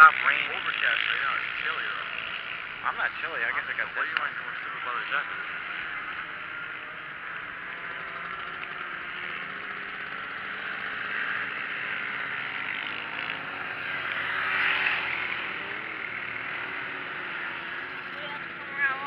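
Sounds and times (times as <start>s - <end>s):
motorcycle passing: 0.0s - 19.0s
race motorcycles engines: 0.0s - 19.0s.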